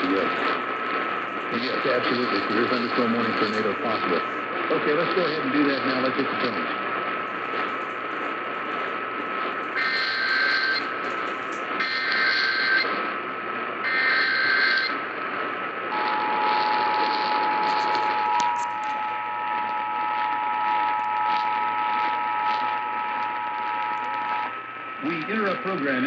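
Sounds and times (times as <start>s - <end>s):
radio hiss: 0.0s - 26.0s
digital data tones burst: 9.7s - 11.1s, 11.8s - 13.0s, 13.8s - 14.9s.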